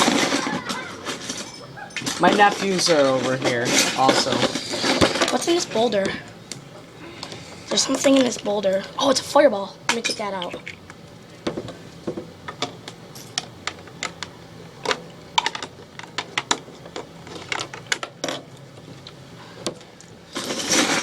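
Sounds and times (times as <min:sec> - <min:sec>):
hands stirring through bricks: 0:00.0 - 0:06.2, 0:20.3 - 0:21.0.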